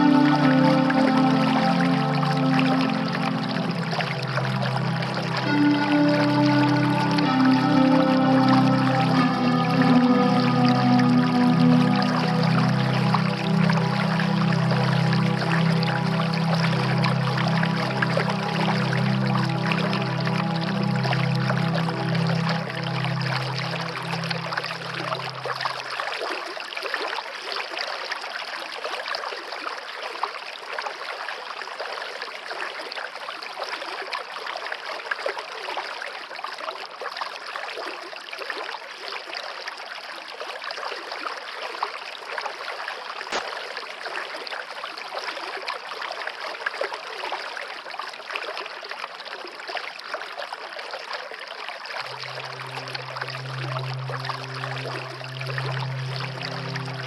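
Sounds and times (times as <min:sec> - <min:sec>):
low steady hum: 0:00.0 - 0:26.0, 0:52.0 - 0:57.0.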